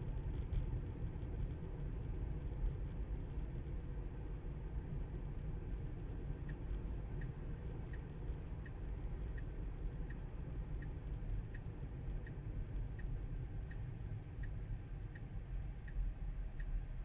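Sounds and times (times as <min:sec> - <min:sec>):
road rumble inside car: 0:00.0 - 0:17.0
turn signal ticking: 0:05.2 - 0:17.0.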